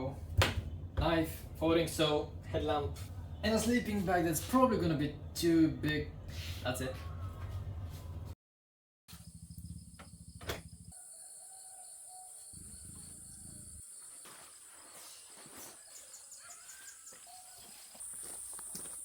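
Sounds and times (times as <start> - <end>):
insects droning at high pitch: 9.1 - 19.0.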